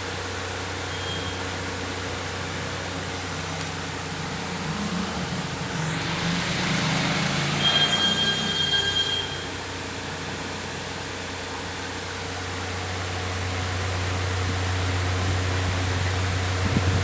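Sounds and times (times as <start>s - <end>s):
electric fan running: 1.5s - 8.7s
low rumble: 2.6s - 9.8s
thin high-pitched tone: 4.2s - 9.7s.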